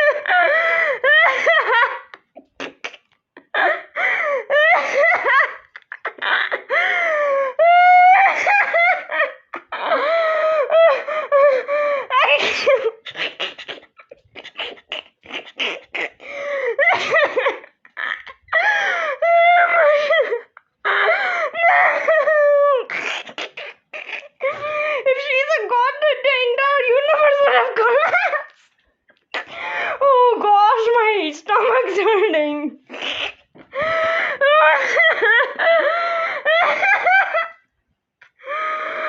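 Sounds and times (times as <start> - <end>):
high-pitched squealing laughter: 7.6 - 11.5, 12.1 - 28.7, 31.6 - 37.6
person breathing: 16.2 - 16.8, 24.4 - 25.1, 29.4 - 30.0, 33.6 - 35.0, 35.7 - 36.5.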